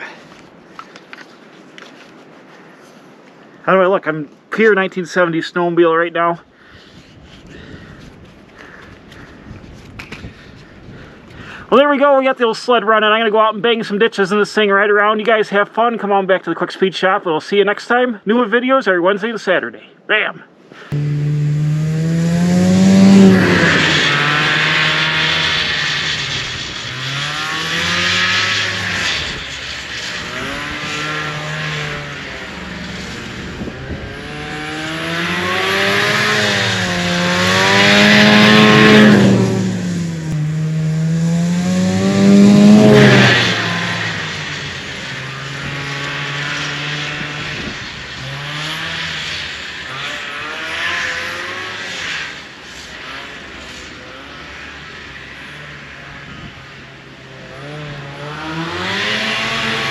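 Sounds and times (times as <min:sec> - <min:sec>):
snowmobile engine revving: 0:20.8 - 0:59.9.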